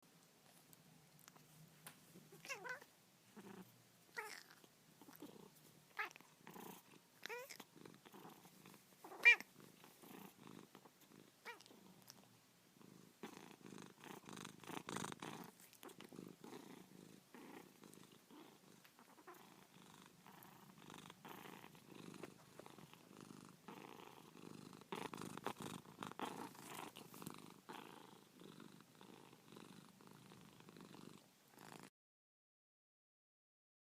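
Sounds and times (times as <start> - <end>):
cat purring: 0.4 - 31.9
cat meowing: 2.4 - 2.9, 4.2 - 4.6, 7.2 - 7.6, 9.1 - 9.5, 11.4 - 11.7.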